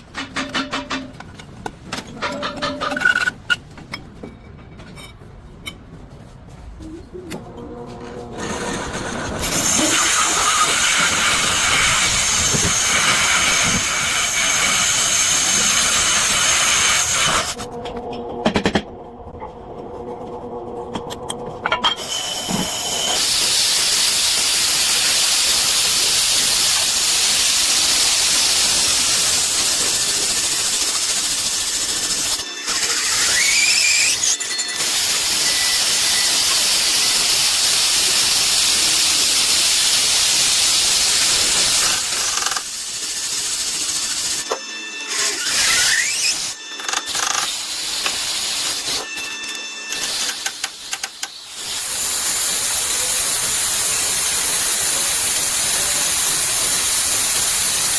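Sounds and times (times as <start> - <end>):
brake lathe cutting rotor: 8.3 - 17.6, 22.0 - 57.9.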